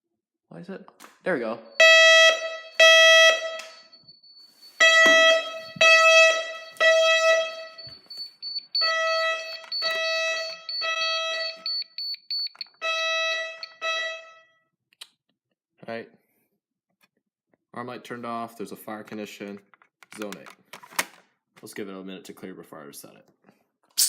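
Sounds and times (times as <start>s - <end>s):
pulsed fire alarm tones: 1.6s - 14.7s.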